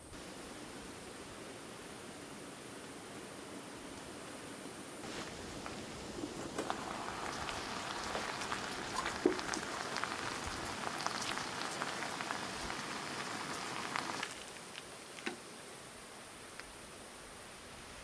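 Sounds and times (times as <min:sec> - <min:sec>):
rain falling on a surface: 0:05.0 - 0:15.6.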